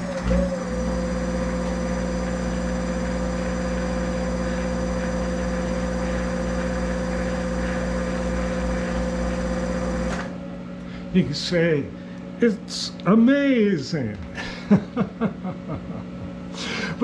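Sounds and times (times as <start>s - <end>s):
lathe motor whining: 0.0s - 10.4s.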